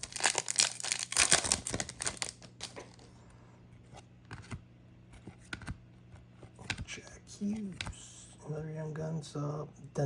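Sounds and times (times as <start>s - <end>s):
foil wrapper tearing and crinkling: 0.0s - 3.0s.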